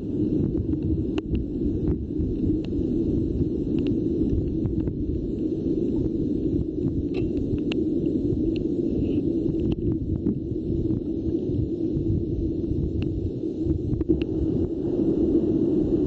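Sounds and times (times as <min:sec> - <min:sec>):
wind on microphone: 0:00.0 - 0:16.0
faint clicks: 0:03.7 - 0:04.9.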